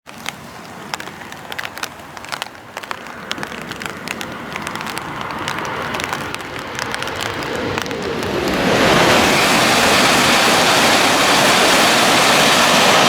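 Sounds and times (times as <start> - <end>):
sharp crackles: 0.0 - 13.0
high-speed train rushing: 7.0 - 13.0.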